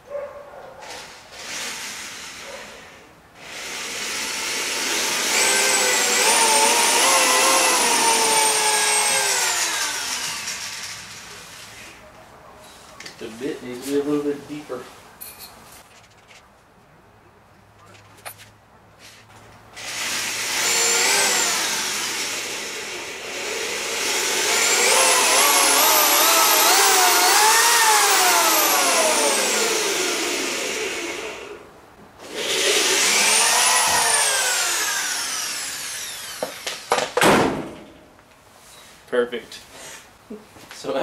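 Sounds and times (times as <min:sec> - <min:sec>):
power drill boring into wood: 0:01.0 - 0:02.5, 0:03.4 - 0:11.2, 0:19.8 - 0:31.6, 0:32.2 - 0:37.1.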